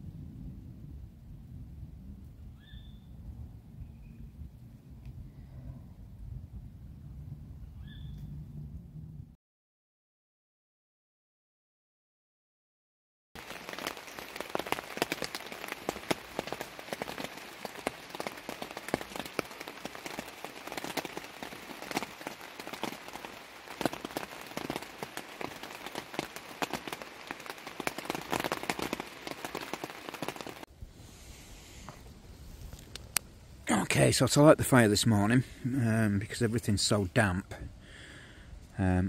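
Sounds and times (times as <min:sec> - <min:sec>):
rain pattering: 0:13.4 - 0:30.7.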